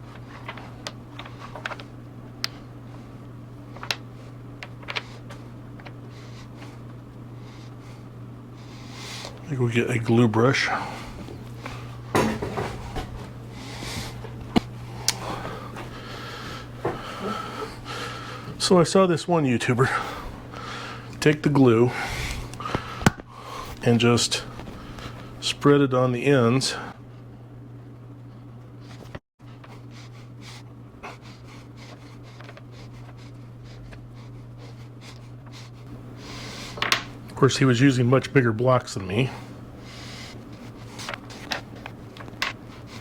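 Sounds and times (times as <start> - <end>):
steady low hum: 0.0 - 43.0
handling noises: 10.4 - 18.6, 39.0 - 43.0
objects clicking on workbench: 36.8 - 37.2.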